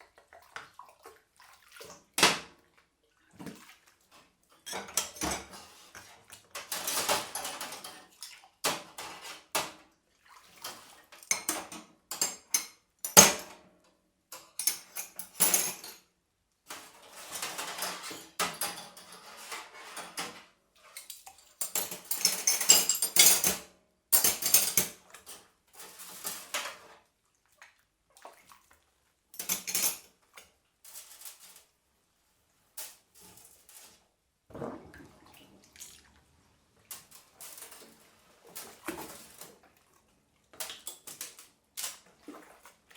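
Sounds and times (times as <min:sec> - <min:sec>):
water splashing in sink: 0:00.0 - 0:04.1, 0:27.3 - 0:29.0, 0:34.5 - 0:42.9.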